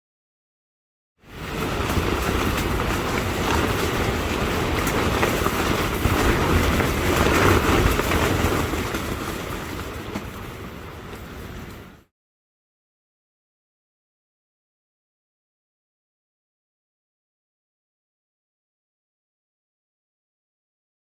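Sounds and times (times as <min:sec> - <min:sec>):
gusty wind: 0:01.2 - 0:12.1
wind buffeting microphone: 0:01.3 - 0:12.1.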